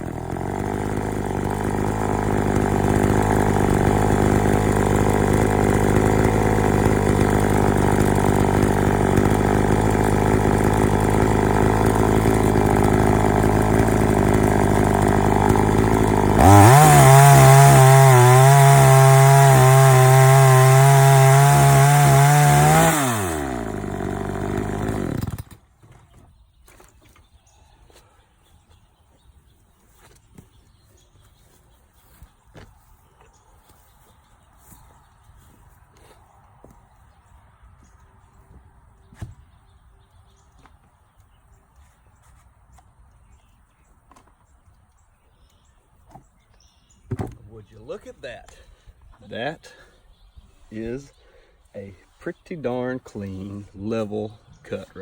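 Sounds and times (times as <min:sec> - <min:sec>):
chainsaw cutting log: 0:00.0 - 0:26.1.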